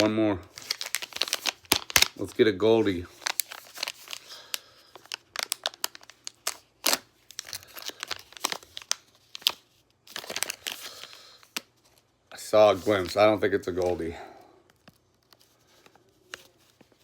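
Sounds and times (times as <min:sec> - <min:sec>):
wrapper being torn and crinkled: 0:00.0 - 0:11.8.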